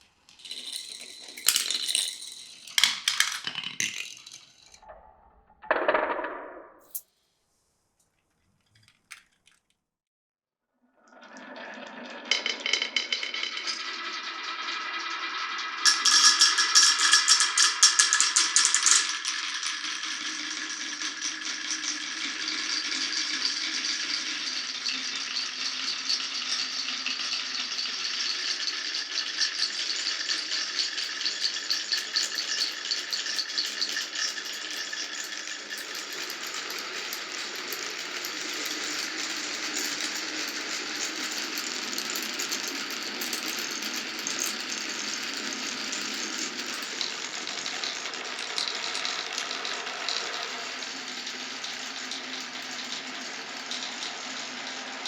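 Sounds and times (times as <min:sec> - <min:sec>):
marbles rattling down wooden run: 0:00.3 - 0:04.8, 0:11.2 - 0:55.0.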